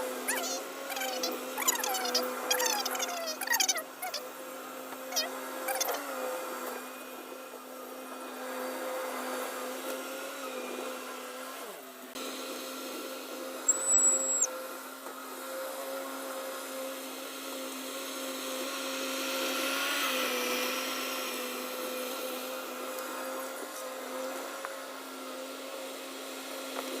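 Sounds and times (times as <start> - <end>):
short high whistle-like tone: 13.7 - 14.5.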